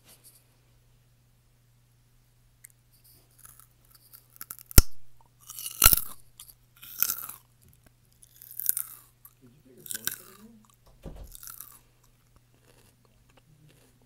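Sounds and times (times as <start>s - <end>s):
biting and chewing crunchy food: 3.1s - 14.0s.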